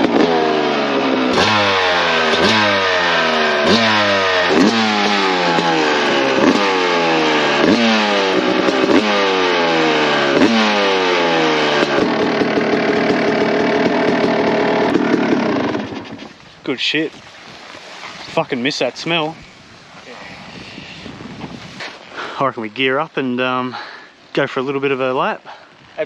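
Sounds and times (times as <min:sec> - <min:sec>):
two-stroke motorcycle engine revving: 0:00.0 - 0:16.4
motorcycle engine idling: 0:00.0 - 0:16.6.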